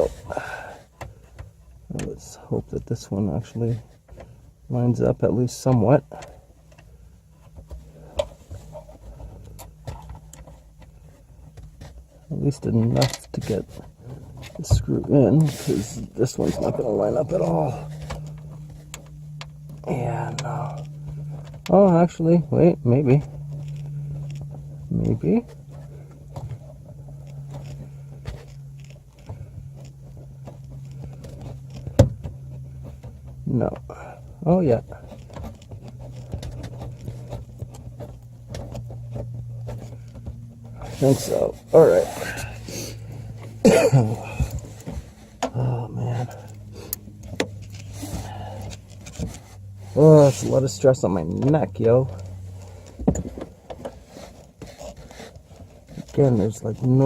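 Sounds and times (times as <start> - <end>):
low hum: 0.0 - 57.0
hands fumbling speaker and screw: 5.7 - 22.1, 23.0 - 57.0.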